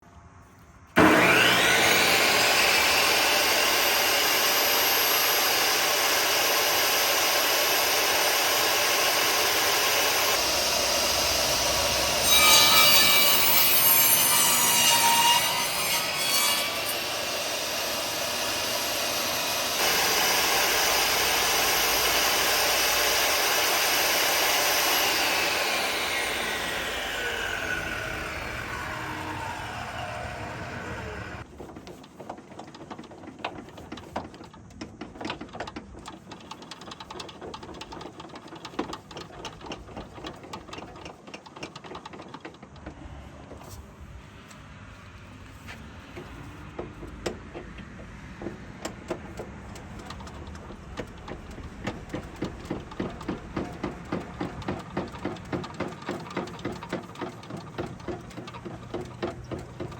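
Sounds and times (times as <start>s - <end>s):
table saw running: 1.0s - 31.5s
saw blade cutting wood: 1.0s - 32.4s.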